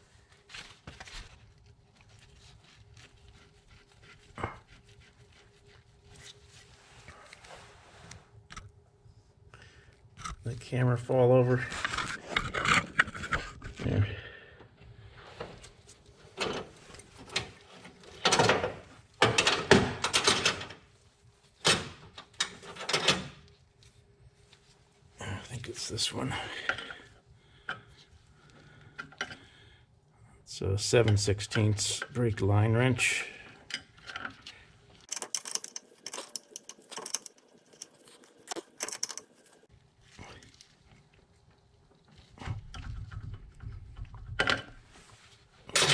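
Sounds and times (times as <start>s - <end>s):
metal wrench clinking: 35.1s - 39.6s
metal hand tools clattering: 35.1s - 39.7s.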